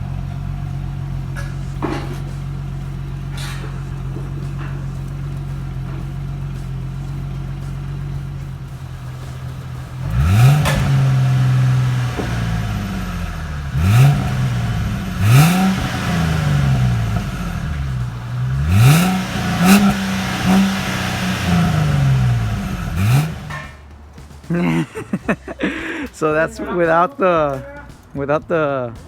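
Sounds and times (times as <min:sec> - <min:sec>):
car engine revving: 0:00.0 - 0:26.4.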